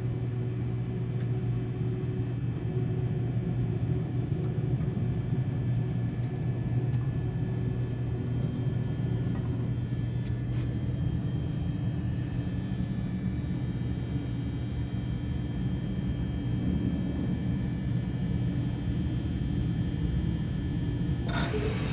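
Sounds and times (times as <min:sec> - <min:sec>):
lathe machine hum: 0:21.3 - 0:21.9.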